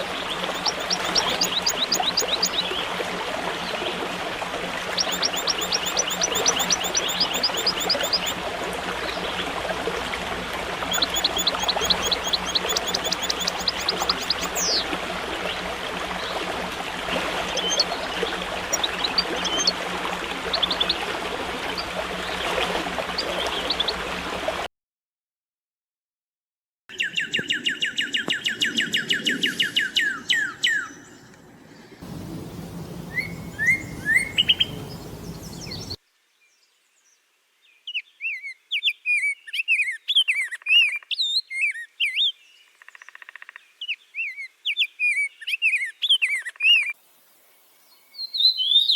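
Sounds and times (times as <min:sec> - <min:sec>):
small birds chirping: 0:00.0 - 0:02.8, 0:05.0 - 0:08.4, 0:10.9 - 0:14.8, 0:26.9 - 0:36.0
steady rushing noise: 0:32.0 - 0:36.0.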